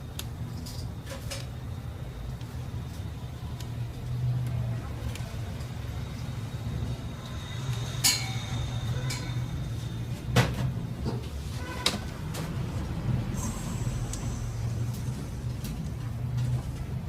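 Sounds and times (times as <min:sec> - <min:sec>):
low steady hum: 0:12.0 - 0:17.0.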